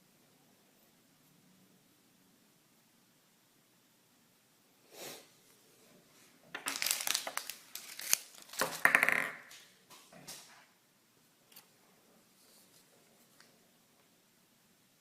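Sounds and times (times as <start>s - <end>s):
packaging crinkling and tearing: 6.6s - 8.8s.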